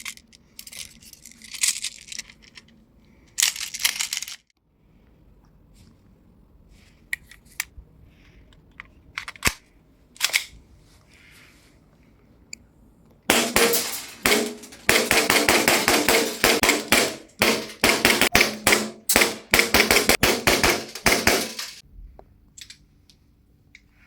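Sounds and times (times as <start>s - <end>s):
airsoft pistol shots: 13.3s - 21.7s.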